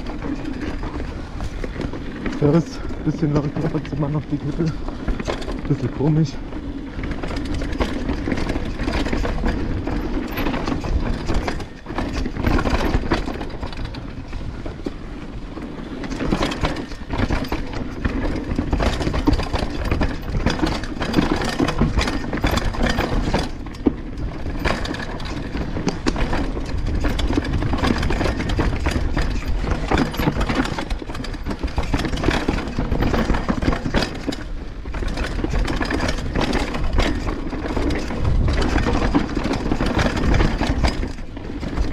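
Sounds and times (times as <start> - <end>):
bike chain rattling: 0.0 - 41.9
tyres rumbling on rough trail: 0.0 - 41.9
wind on microphone: 38.0 - 39.3.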